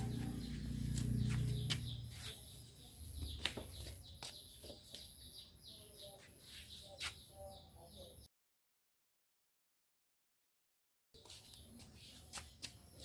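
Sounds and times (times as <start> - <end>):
small birds chirping: 0.0 - 8.3, 11.2 - 13.0.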